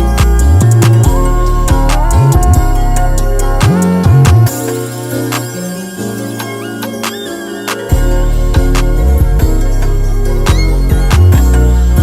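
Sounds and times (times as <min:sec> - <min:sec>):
deep bass: 0:00.0 - 0:04.5, 0:08.0 - 0:12.0
music with steady beat: 0:00.0 - 0:12.0.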